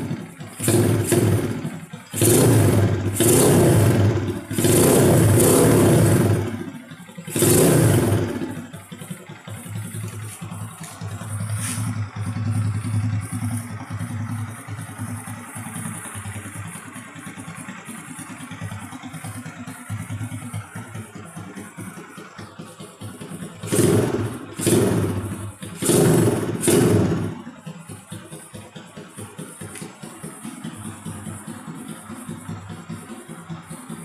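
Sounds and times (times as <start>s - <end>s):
motorcycle engine idling: 0.0s - 34.0s
motorcycle engine revving: 0.0s - 34.0s.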